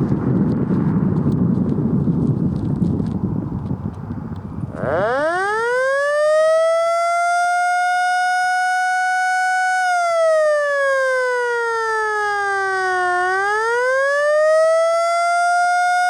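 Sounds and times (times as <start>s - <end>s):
siren wailing: 4.7s - 16.0s.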